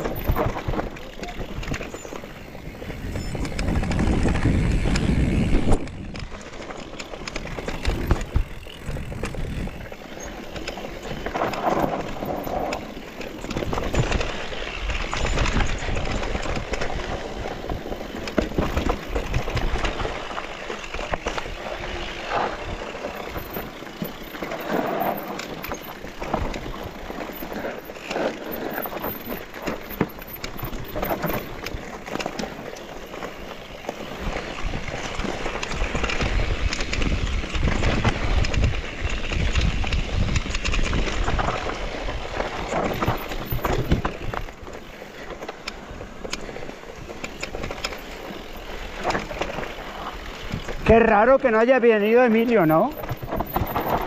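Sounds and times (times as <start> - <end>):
wind rumble on microphone: 0.0 - 6.5, 7.2 - 20.5, 34.0 - 44.8
bike clattering over bumps: 0.0 - 54.0
bike tyres rolling over dirt: 0.0 - 54.0.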